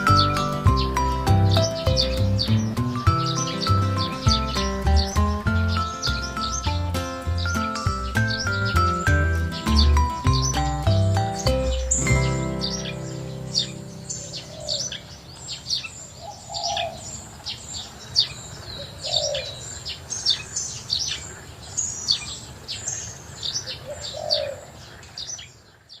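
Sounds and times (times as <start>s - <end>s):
lower bird call: 0.0s - 19.7s
birds chirping: 0.0s - 26.0s.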